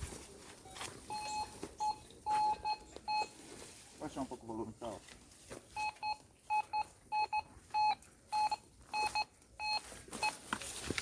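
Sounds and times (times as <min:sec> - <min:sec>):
metal detector beeping: 0:00.6 - 0:03.4, 0:05.7 - 0:10.4.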